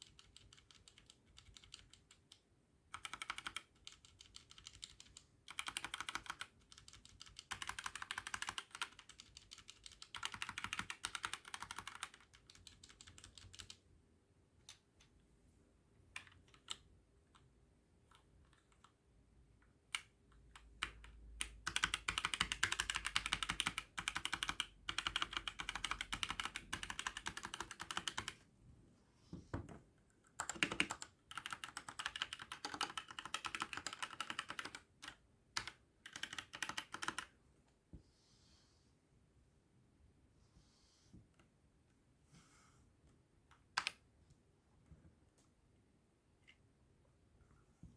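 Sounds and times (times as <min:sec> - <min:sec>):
typing on mechanical keyboard: 0:00.0 - 0:13.8, 0:16.2 - 0:16.8, 0:19.9 - 0:28.4, 0:30.3 - 0:37.3.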